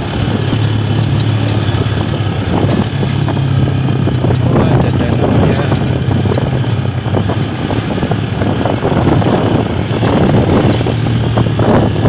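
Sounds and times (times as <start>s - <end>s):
vehicle engine droning: 0.0s - 12.0s
wind and road noise: 0.0s - 12.0s.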